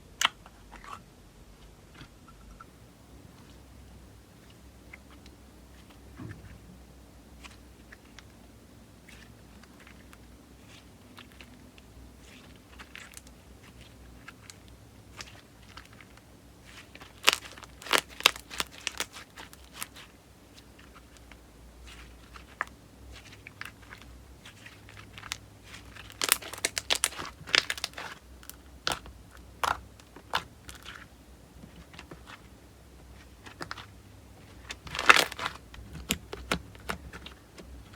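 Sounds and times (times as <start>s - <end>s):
slime squeezed crackling: 9.0s - 37.9s.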